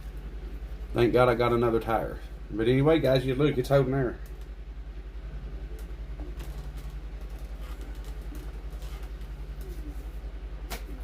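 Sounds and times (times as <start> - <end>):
pulsing mechanical hum: 0.0 - 11.0.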